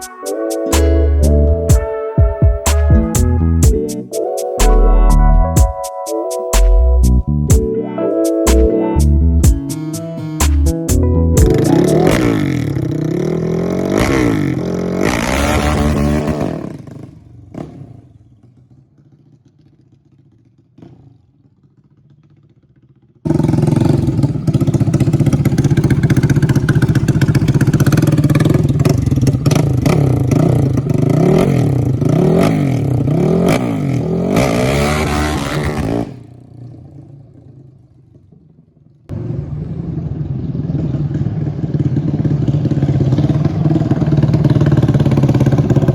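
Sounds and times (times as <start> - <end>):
quad engine revving: 11.4 - 18.1, 23.3 - 36.5, 41.0 - 45.9.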